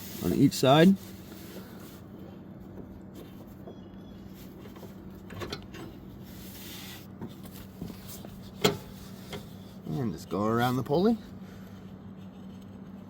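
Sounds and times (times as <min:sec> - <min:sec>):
belt rubbing and scraping on metal: 0:00.0 - 0:02.1, 0:05.8 - 0:10.0
steady low hum: 0:00.0 - 0:13.0.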